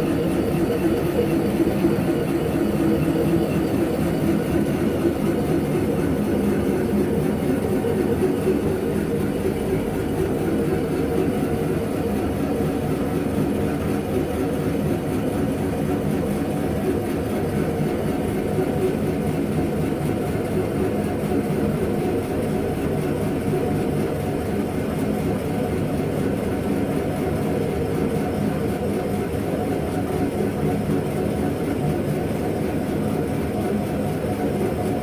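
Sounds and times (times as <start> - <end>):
machine tool humming: 0.0 - 10.6.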